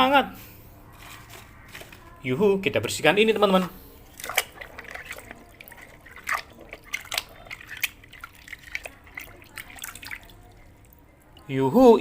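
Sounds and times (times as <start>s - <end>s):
water splashing and dripping: 4.0s - 11.6s.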